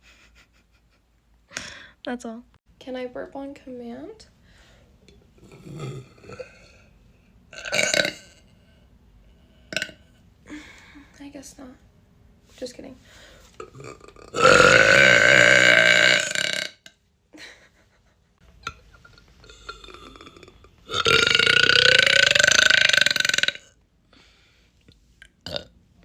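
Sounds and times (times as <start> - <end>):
woman belching: 5.4 - 6.8, 7.6 - 8.4, 9.7 - 10.0, 13.6 - 16.9, 18.6 - 23.7, 25.4 - 25.7.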